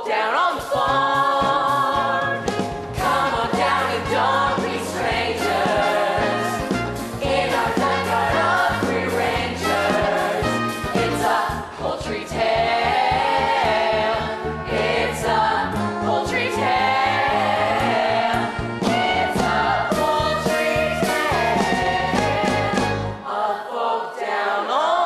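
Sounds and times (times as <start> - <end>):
instrumental accompaniment: 1.8 - 23.4
children singing in chorus: 22.2 - 25.0.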